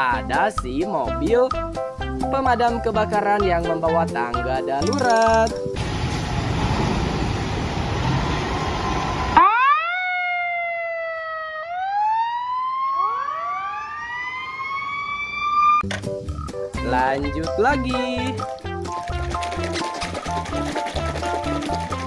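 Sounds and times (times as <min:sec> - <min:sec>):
fire engine siren wailing: 0:08.2 - 0:15.8
second siren rising: 0:08.2 - 0:15.8.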